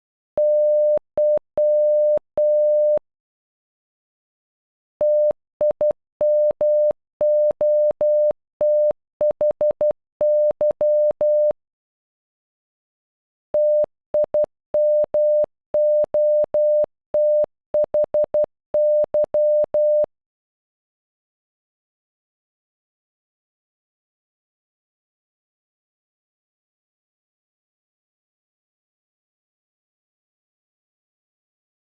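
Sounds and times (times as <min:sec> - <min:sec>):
morse code beep tone: 0:00.4 - 0:03.0, 0:05.0 - 0:11.6, 0:13.6 - 0:20.1.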